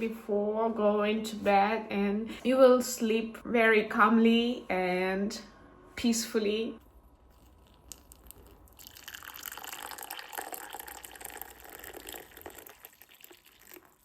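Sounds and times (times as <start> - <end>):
water pouring into a cup: 7.3 - 14.0.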